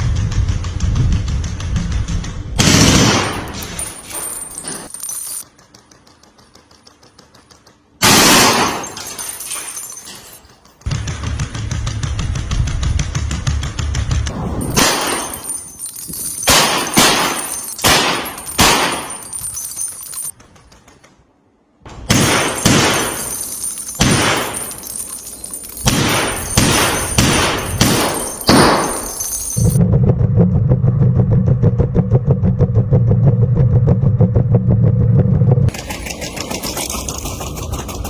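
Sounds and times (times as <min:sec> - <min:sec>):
submachine gun firing: 0:02.6 - 0:03.6, 0:05.6 - 0:08.9, 0:16.4 - 0:19.2, 0:22.1 - 0:23.2, 0:24.0 - 0:24.6, 0:25.8 - 0:28.9
low mechanical hum: 0:08.8 - 0:38.0.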